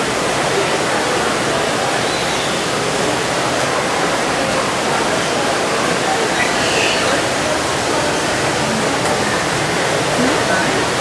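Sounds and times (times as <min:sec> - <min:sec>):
falling water rushing: 0:00.0 - 0:11.0.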